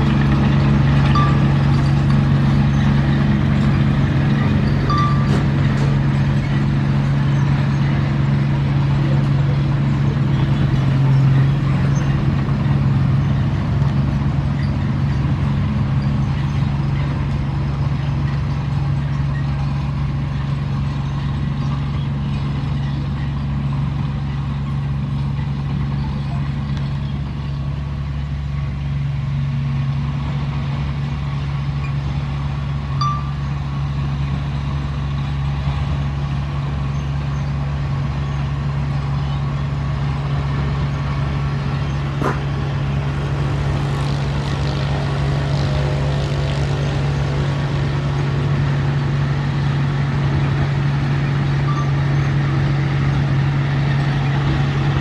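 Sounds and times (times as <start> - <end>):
heavy diesel engine running: 0.0 - 55.0.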